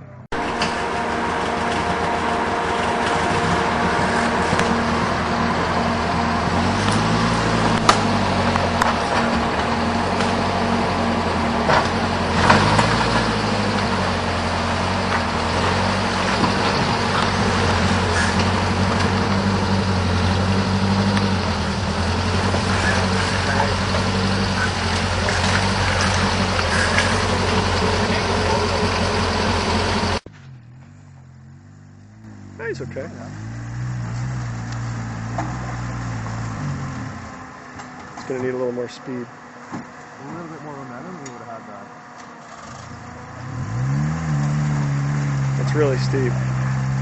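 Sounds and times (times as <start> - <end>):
engine revving under load: 0.0 - 47.0.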